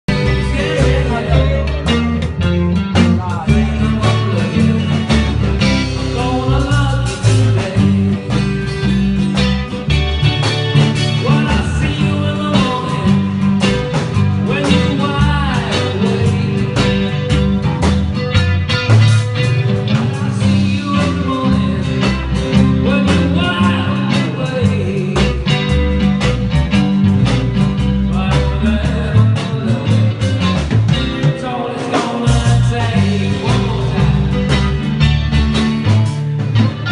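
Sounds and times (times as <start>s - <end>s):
live band playing: 0.0s - 36.9s
person singing: 0.1s - 9.1s, 10.7s - 17.6s, 19.6s - 26.0s, 27.8s - 34.9s.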